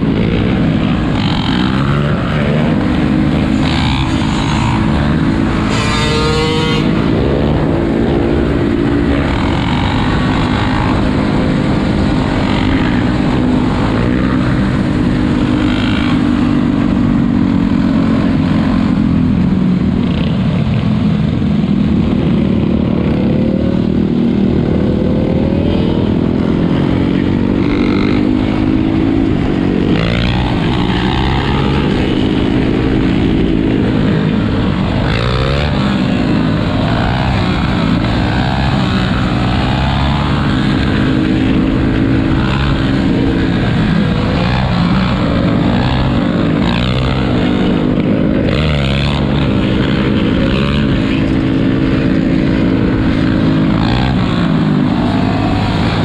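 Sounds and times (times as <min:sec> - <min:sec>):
atv and dirt bike engines: 0:00.0 - 0:56.0
engines revving: 0:00.0 - 0:56.0.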